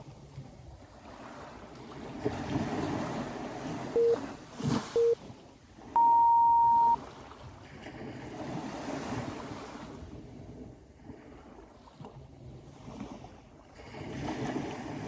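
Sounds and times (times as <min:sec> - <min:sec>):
sea waves washing in: 0:00.0 - 0:15.0
electronic timer beeps: 0:04.0 - 0:04.2, 0:05.0 - 0:05.2, 0:06.0 - 0:07.0.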